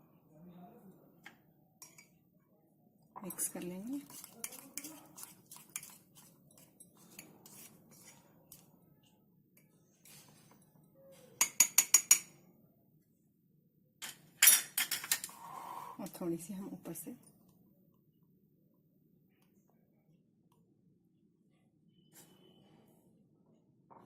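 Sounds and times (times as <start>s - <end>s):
spoon stirring batter in a cup: 0.9s - 2.2s, 3.2s - 10.8s, 11.4s - 12.4s.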